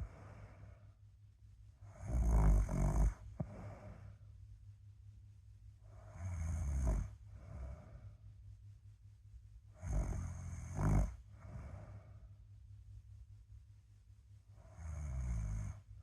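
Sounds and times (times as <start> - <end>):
soft breath: 0.0 - 1.1, 3.0 - 4.5, 7.1 - 8.4, 11.2 - 12.6
person snoring: 1.9 - 4.0, 6.1 - 7.9, 9.8 - 12.0, 14.7 - 15.8.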